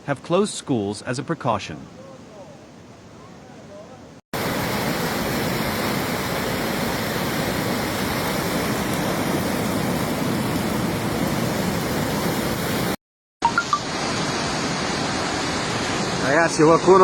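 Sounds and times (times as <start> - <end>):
floodwater rushing: 4.4 - 17.0.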